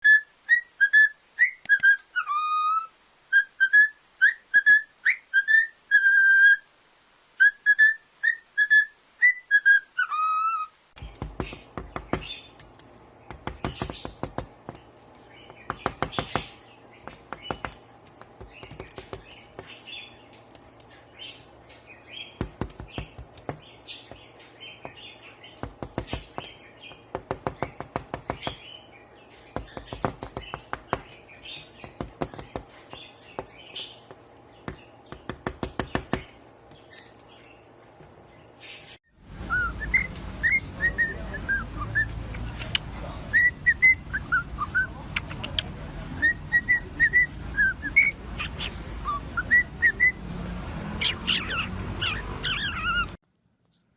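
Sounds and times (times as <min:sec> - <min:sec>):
parrot chirping: 0:00.0 - 0:06.7, 0:07.4 - 0:37.6, 0:38.7 - 0:53.2
parrot clicking: 0:11.0 - 0:19.8, 0:20.4 - 0:21.5, 0:42.2 - 0:43.0, 0:43.6 - 0:45.9.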